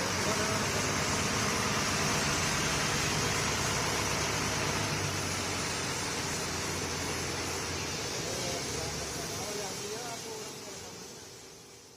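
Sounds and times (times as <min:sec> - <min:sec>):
engine idling: 0:00.0 - 0:11.5.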